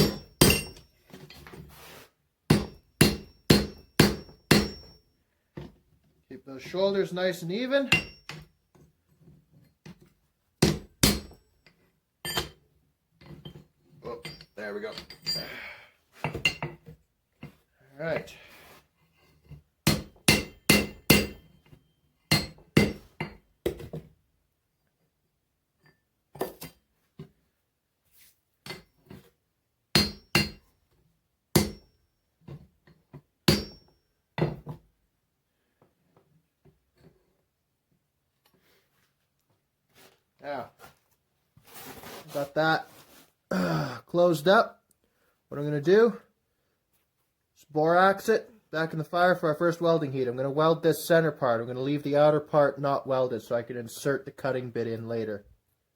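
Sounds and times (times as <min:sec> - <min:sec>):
hammer striking steel on anvil: 0:00.0 - 0:00.8, 0:02.5 - 0:05.0, 0:07.9 - 0:08.4, 0:19.9 - 0:21.4, 0:22.3 - 0:23.4, 0:30.0 - 0:30.6, 0:33.5 - 0:33.9.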